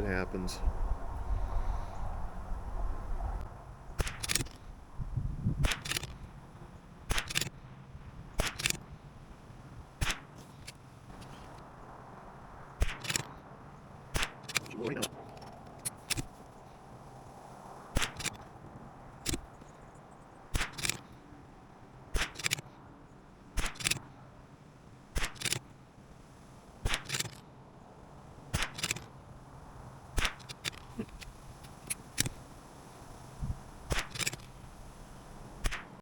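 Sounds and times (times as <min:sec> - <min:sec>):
rifle shots cracking: 0:04.0 - 0:04.6, 0:14.1 - 0:15.2
rifle bolt click: 0:07.1 - 0:07.5, 0:25.2 - 0:25.6.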